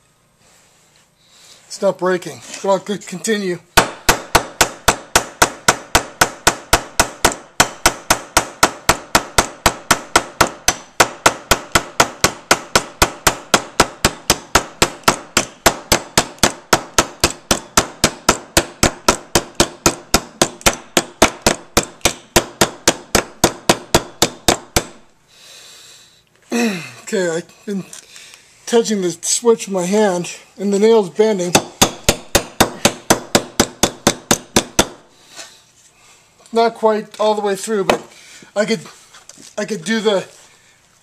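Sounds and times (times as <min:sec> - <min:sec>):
hammering nail into wood: 0:03.8 - 0:25.1, 0:31.5 - 0:35.1.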